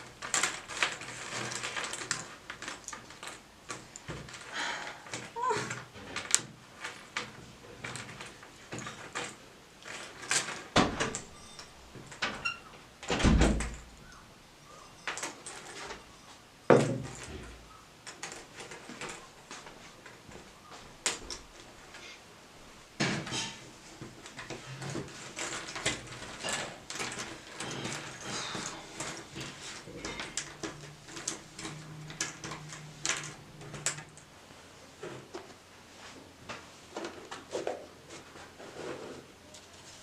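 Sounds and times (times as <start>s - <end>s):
objects clicking and tapping: 0.0s - 12.4s, 23.0s - 34.3s.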